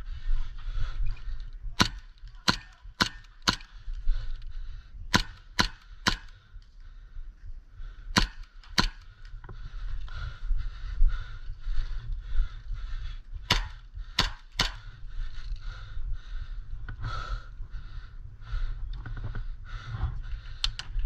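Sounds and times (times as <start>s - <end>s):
airsoft gun shots: 1.8s - 3.7s, 5.1s - 6.4s, 8.2s - 9.1s, 13.5s - 14.9s.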